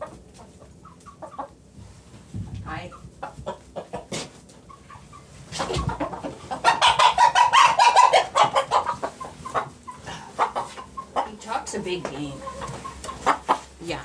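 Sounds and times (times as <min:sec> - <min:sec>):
rooster clucking and squawking: 0:00.0 - 0:01.7, 0:02.9 - 0:13.8
chickens clucking softly: 0:00.0 - 0:13.8.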